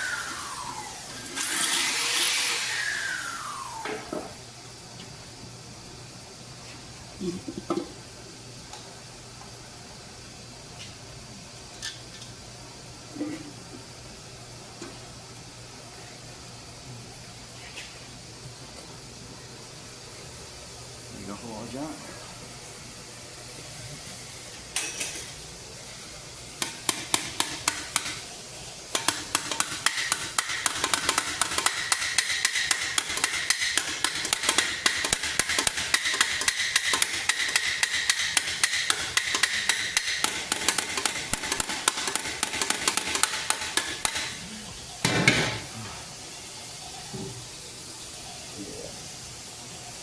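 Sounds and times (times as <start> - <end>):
hammer peening rivets on steel helmet: 26.6 - 28.2, 29.0 - 44.4.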